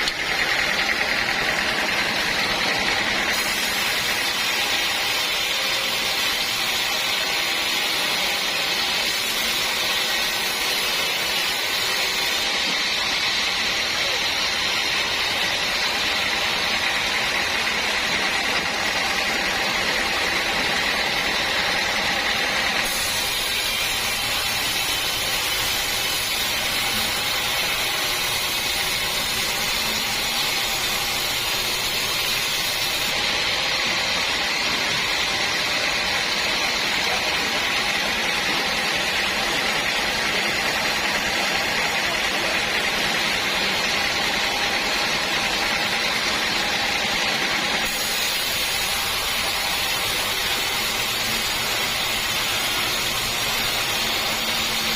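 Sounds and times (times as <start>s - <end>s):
saw cutting through log: 0.0s - 54.9s.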